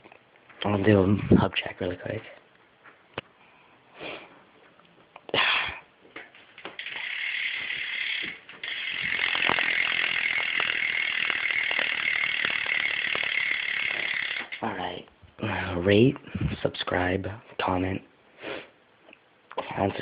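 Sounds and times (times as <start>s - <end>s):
bike hub ratcheting buzz: 6.5s - 14.6s.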